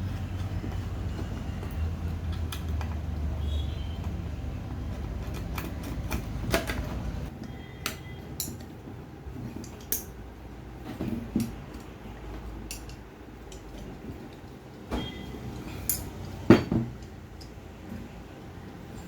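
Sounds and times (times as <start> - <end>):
metal tools clinking: 12.6 - 17.6.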